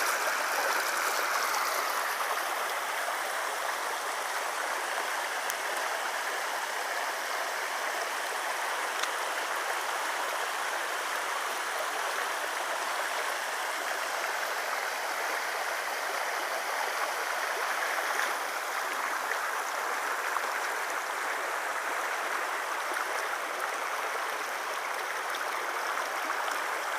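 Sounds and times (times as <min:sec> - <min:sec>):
floodwater rushing: 0:00.0 - 0:26.9.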